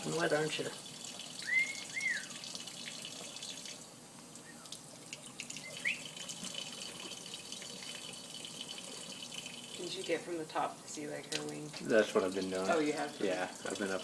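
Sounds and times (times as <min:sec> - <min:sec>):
tap water running into sink: 0:00.0 - 0:03.9, 0:04.6 - 0:14.0
parrot calls: 0:01.4 - 0:02.4, 0:05.6 - 0:06.2.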